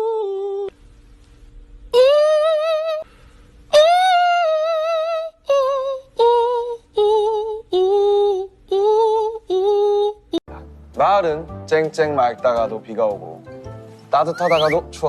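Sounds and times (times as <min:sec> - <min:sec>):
high melody with vibrato: 0:14.2 - 0:14.9.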